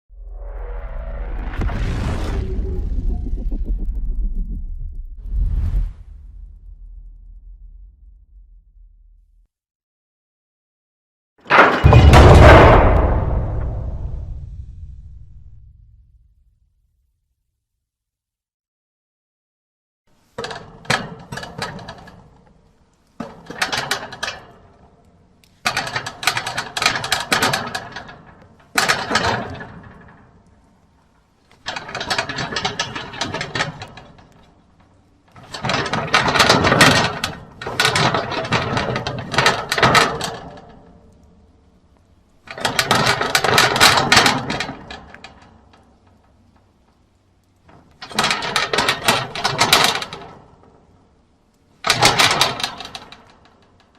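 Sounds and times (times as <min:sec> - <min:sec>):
metal gate rattling and clanking: 0:11.5 - 0:13.8, 0:23.2 - 0:24.7, 0:25.7 - 0:30.3, 0:31.6 - 0:34.4, 0:35.3 - 0:41.2, 0:42.4 - 0:45.9, 0:47.6 - 0:50.5, 0:51.8 - 0:53.7.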